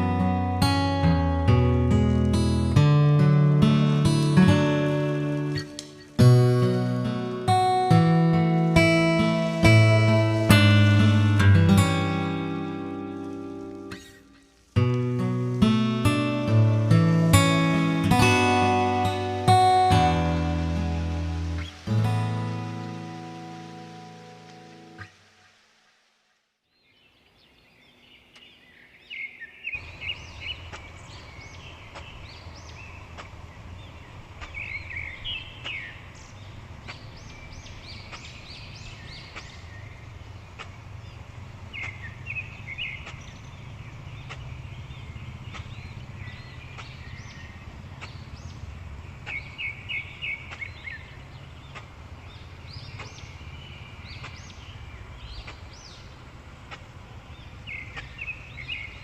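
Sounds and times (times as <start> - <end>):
birds chirping: 0.0 - 25.8, 26.6 - 59.0
faint ticks: 31.9 - 33.5, 35.6 - 49.7, 50.4 - 59.0.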